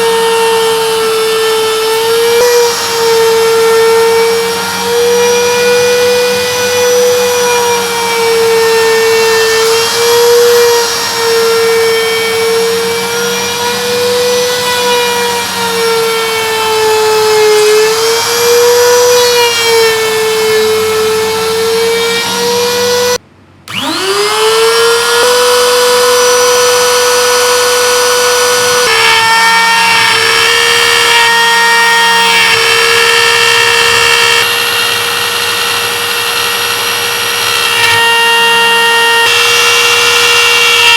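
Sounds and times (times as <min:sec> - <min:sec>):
router spindle whining: 0:00.0 - 0:40.9.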